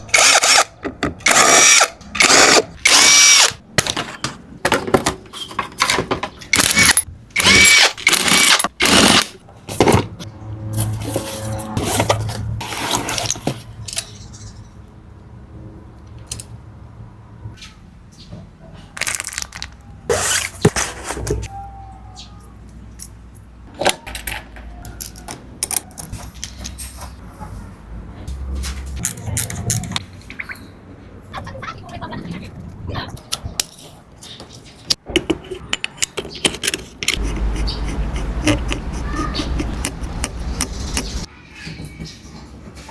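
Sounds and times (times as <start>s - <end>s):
metal parts clicking and rattling: 0.1s - 10.0s, 19.0s - 19.8s, 23.8s - 27.2s, 34.9s - 37.5s
brake pad scraping on disc: 35.2s - 41.3s.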